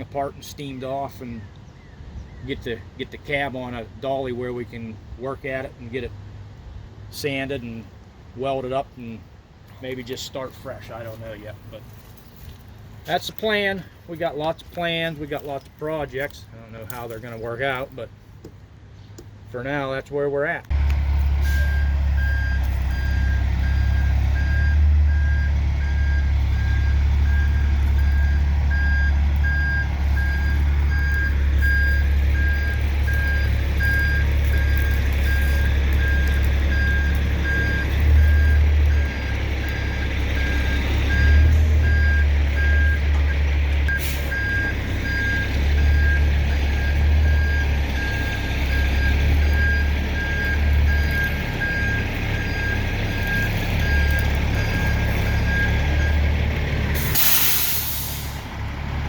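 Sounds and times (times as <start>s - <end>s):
truck engine rumbling: 0.0s - 59.0s
truck backup alarm beeping: 20.7s - 58.6s.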